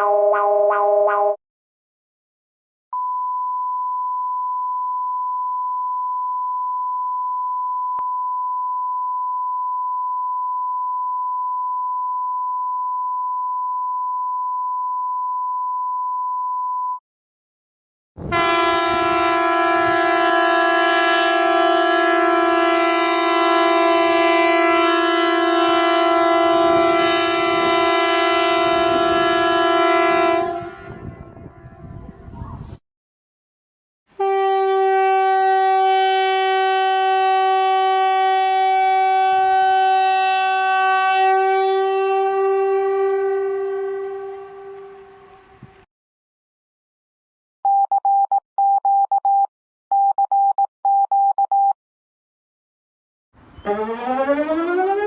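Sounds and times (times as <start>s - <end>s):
steady pure beep: 3.0s - 17.0s
harsh horn-like alarm tone: 18.3s - 32.0s, 34.2s - 45.4s, 53.6s - 55.0s.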